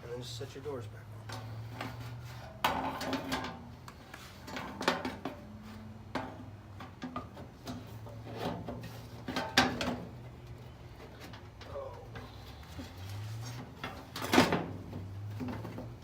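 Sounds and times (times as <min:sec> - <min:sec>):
sheet metal doors clattering: 0:13.7 - 0:16.0.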